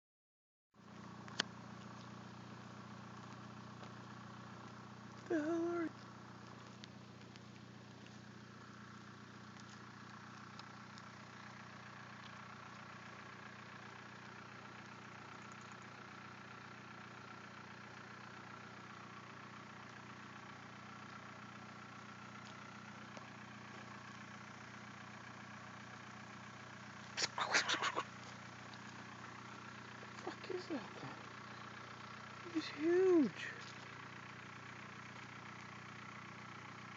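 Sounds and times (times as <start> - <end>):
faint ticks: 0.8 - 24.7, 28.2 - 30.2
low engine hum: 0.8 - 36.9.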